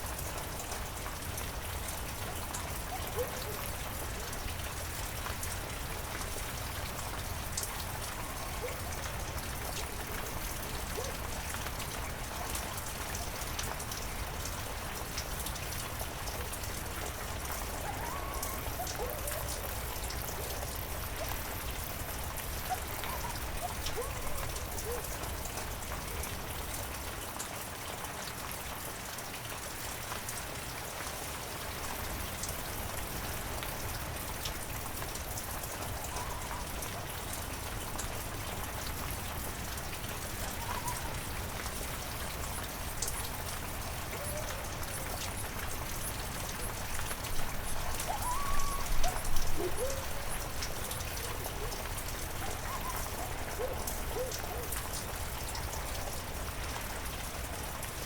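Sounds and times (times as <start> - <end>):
heavy rain: 0.0 - 58.0
raindrops ticking: 0.0 - 58.0
short wavering pitched calls: 48.0 - 50.2.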